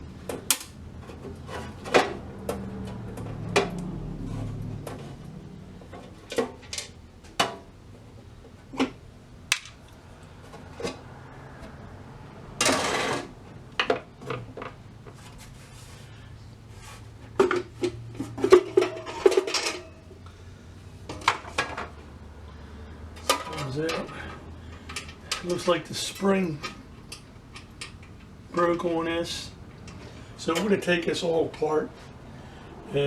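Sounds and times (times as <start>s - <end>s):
metal scrape: 12.6s - 13.4s.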